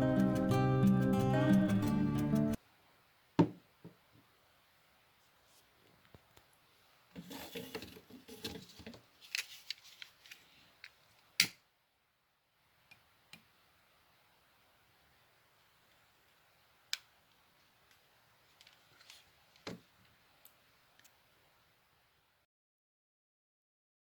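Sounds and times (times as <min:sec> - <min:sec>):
rustling of small objects: 0:07.2 - 0:11.2.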